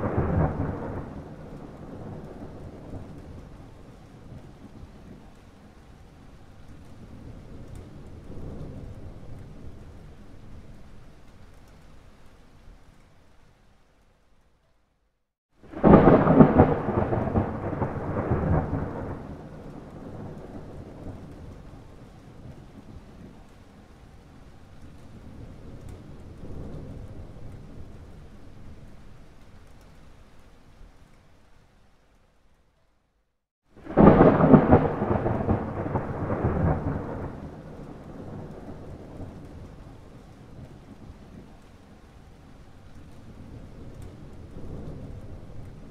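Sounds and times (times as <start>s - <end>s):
thunder crack: 0.0s - 3.1s, 15.7s - 21.4s, 33.8s - 39.5s
thunder crack and rumble: 0.0s - 5.4s, 6.6s - 11.2s, 15.6s - 23.6s, 24.9s - 29.2s, 33.8s - 42.3s, 43.0s - 45.9s
faint rain hiss: 0.0s - 45.9s.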